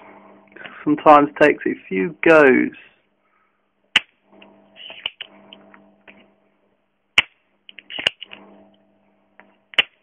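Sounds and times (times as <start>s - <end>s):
faint hum: 0.0s - 10.0s
solder sucker plunger snapping: 7.2s - 8.4s, 9.7s - 10.0s.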